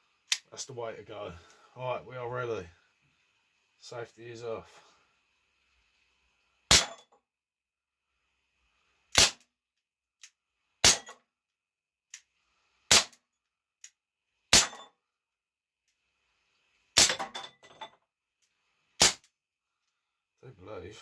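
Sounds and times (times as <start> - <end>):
air pistol shots: 9.1 - 9.4, 10.8 - 11.1, 12.9 - 13.2, 19.0 - 19.2.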